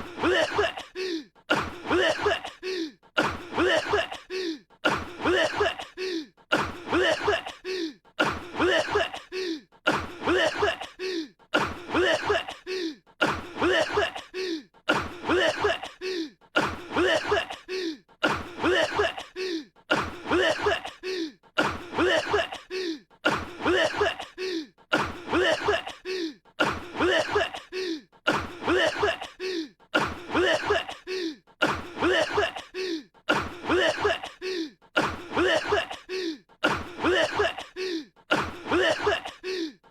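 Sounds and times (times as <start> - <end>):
cartoon character coughing: 0.0 - 1.0, 1.6 - 2.6, 3.2 - 4.3, 4.9 - 6.0, 6.6 - 7.6, 8.2 - 9.3, 9.9 - 11.0, 11.6 - 16.0, 16.6 - 19.4, 20.0 - 21.0, 21.6 - 22.7, 23.3 - 24.4, 25.0 - 27.7, 28.3 - 29.4, 30.0 - 34.4, 35.0 - 37.8, 38.4 - 39.4.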